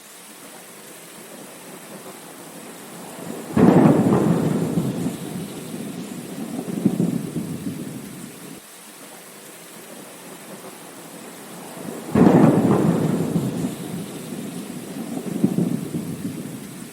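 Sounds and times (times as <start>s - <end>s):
heavy rain falling: 0.0s - 16.9s
thunder clap and rumble: 2.7s - 8.6s, 11.5s - 16.9s.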